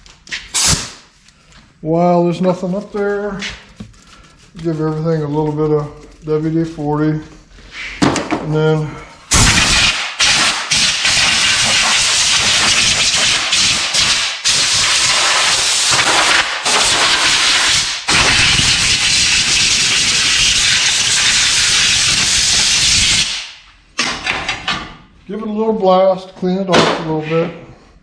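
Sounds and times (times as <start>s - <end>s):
pressurised spray hissing: 9.5s - 23.5s.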